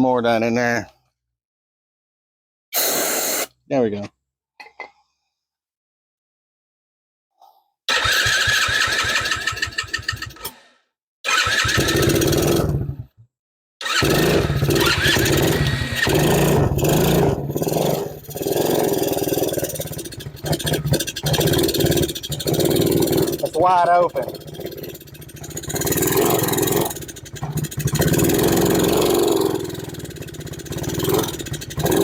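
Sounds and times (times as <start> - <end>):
small engine running raggedly: 7.9 - 10.4, 11.3 - 13.0, 13.8 - 32.0
electric starter cranking: 7.9 - 10.5, 11.3 - 12.8, 13.8 - 32.0.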